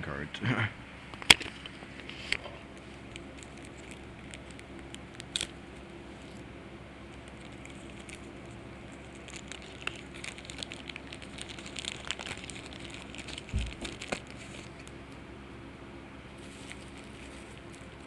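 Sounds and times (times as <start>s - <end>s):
foil wrapper crinkling: 2.0s - 5.6s, 7.1s - 15.2s, 16.3s - 18.0s.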